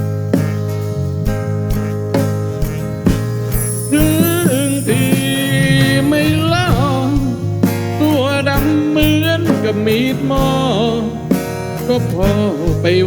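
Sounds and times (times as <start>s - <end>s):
bass: 0.0s - 13.0s
drums steady beat: 2.6s - 9.5s
lead melody with pitch bends: 3.5s - 7.6s.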